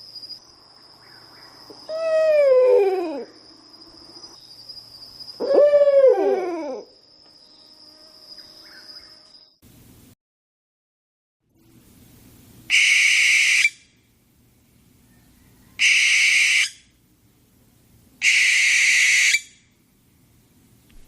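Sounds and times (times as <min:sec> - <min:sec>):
high-pitched owl call: 0:01.1 - 0:04.4, 0:05.3 - 0:07.0, 0:12.7 - 0:13.9, 0:15.1 - 0:16.9, 0:18.2 - 0:19.6.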